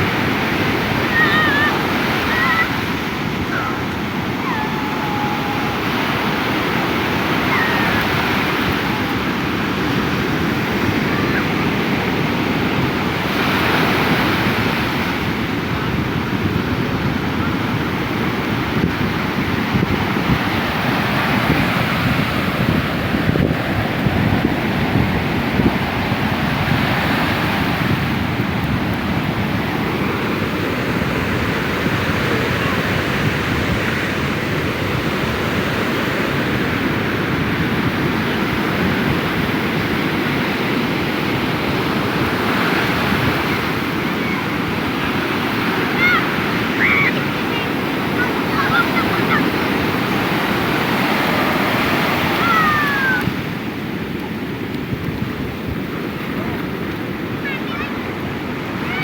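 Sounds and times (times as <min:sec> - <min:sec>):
surf washing onto beach: 0:00.0 - 0:59.0
wind buffeting microphone: 0:00.0 - 0:59.0
faint high shouts: 0:01.0 - 0:02.8, 0:03.5 - 0:06.6, 0:07.3 - 0:09.2, 0:45.9 - 0:47.3, 0:52.4 - 0:53.3.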